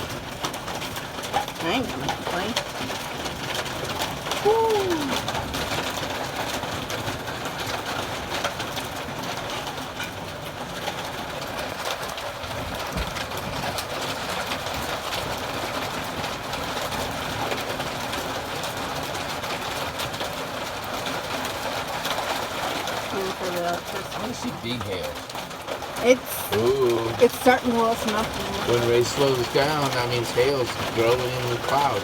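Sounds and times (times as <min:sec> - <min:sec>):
steady rain falling: 0:00.0 - 0:32.0.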